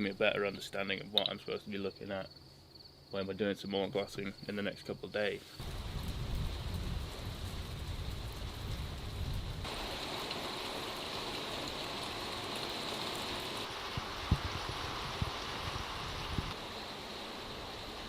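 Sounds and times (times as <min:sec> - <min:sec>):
rain hissing: 0:05.4 - 0:18.0.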